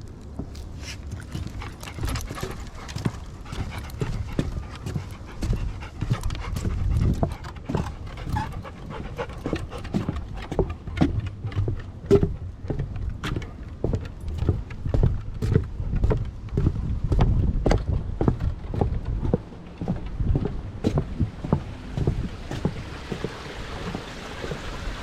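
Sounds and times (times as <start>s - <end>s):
footsteps: 0.0s - 24.8s
dog panting: 0.5s - 16.7s.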